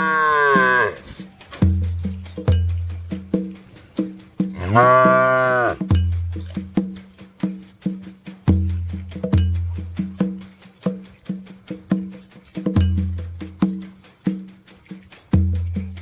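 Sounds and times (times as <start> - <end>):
cow mooing: 0.0 - 1.2, 4.5 - 5.8
music with percussion beat and bass: 0.0 - 16.0.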